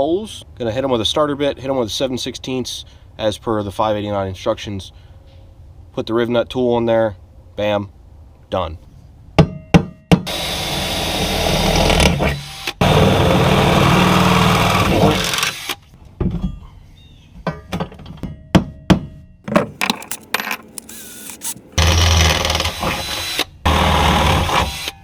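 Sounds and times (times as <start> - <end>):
tools and metal parts clicking: 19.5 - 21.8
power drill running: 19.5 - 21.9.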